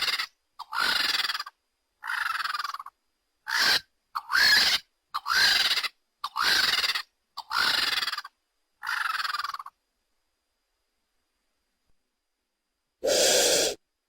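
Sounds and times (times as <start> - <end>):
high-pitched dinosaur calls: 13.0 - 13.8.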